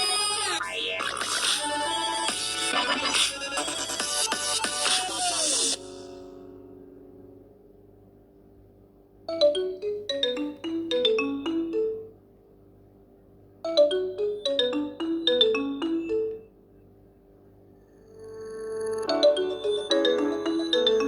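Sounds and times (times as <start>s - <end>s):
marimba-like ringtone melody: 9.3s - 12.2s, 13.6s - 16.6s, 17.9s - 21.0s.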